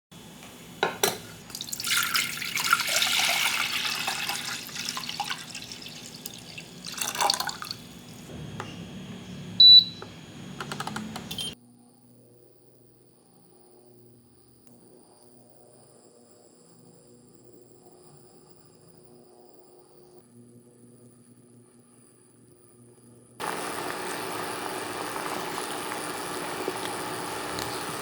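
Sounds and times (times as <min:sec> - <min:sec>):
water running in sink: 0:00.2 - 0:11.4, 0:23.4 - 0:28.0
kitchenware clicks and knocks: 0:00.8 - 0:01.4.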